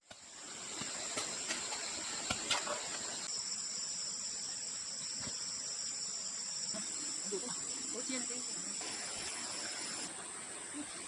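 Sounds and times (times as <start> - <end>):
insects buzzing high-pitched: 0.0 - 11.0.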